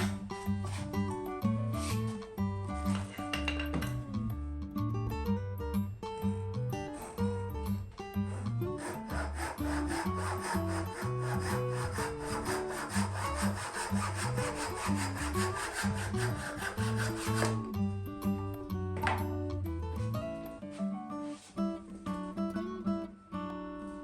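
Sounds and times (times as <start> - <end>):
saw cutting through wood: 0.0 - 1.1, 6.8 - 7.3, 8.2 - 17.7
background music: 0.0 - 24.0.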